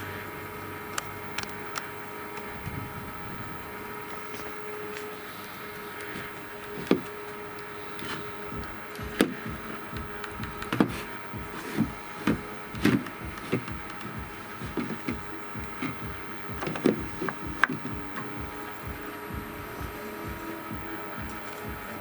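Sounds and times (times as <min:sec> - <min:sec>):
faint steady hum: 0:00.0 - 0:22.0
plastic clicks and knocks: 0:06.0 - 0:19.0.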